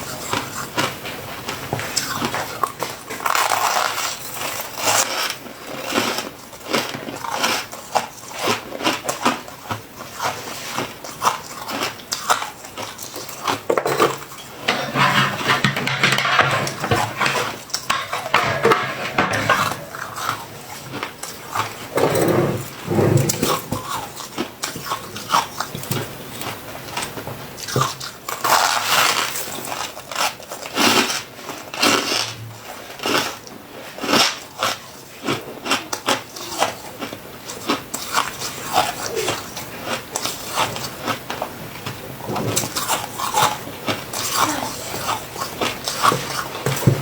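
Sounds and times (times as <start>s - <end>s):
chewing crunchy frost: 0.0s - 15.2s, 19.4s - 22.0s, 22.6s - 46.8s
cutlery clinking: 13.7s - 24.0s.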